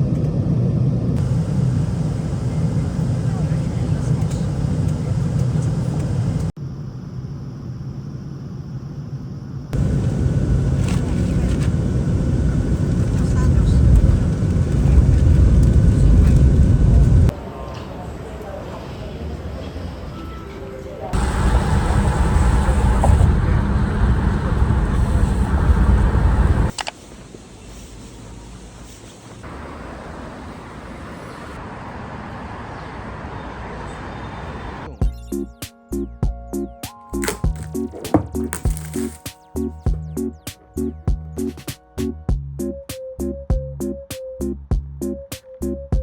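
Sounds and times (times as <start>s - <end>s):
vehicle rumble from inside: 0.0s - 6.6s, 9.8s - 17.3s, 21.1s - 26.8s.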